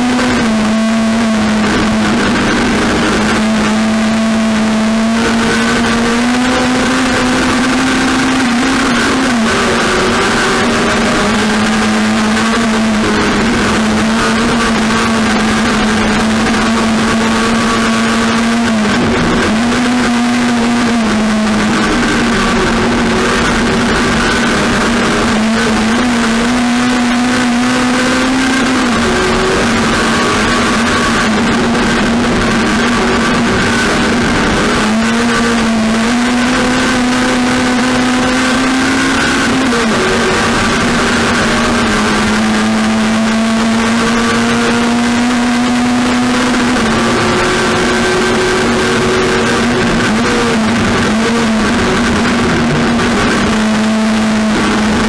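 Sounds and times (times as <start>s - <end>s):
heavy noise: 0.0s - 55.0s
race car engine running hard: 0.0s - 55.0s.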